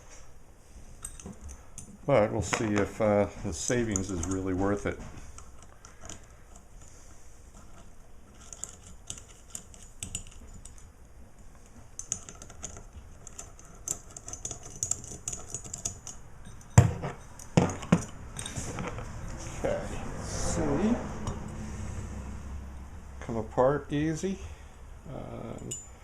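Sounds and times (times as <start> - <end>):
metallic clicking of hand tools: 1.0 - 3.0, 3.7 - 7.0, 7.6 - 10.9, 11.9 - 18.6
metal parts knocking: 1.0 - 6.9, 7.6 - 10.9, 11.9 - 19.0.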